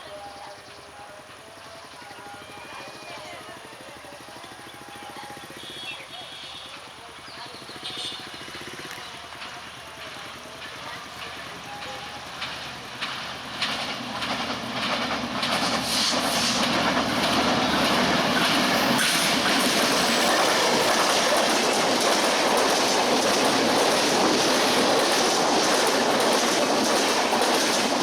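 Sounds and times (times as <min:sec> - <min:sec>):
diesel train passing: 0:00.0 - 0:28.0
wheels clicking over rail joints: 0:08.3 - 0:28.0.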